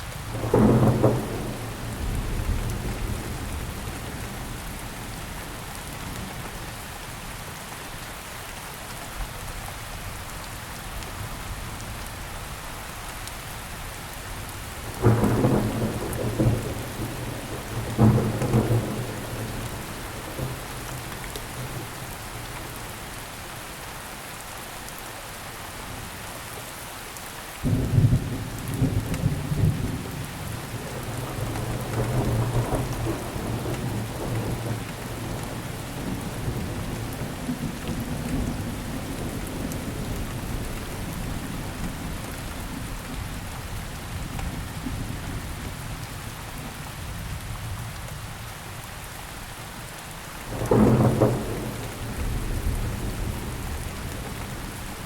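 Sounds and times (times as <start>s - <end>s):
steady rain falling: 0.0s - 55.0s
thunder rumbling: 0.3s - 5.1s, 14.8s - 23.1s, 27.6s - 43.4s, 50.5s - 55.0s.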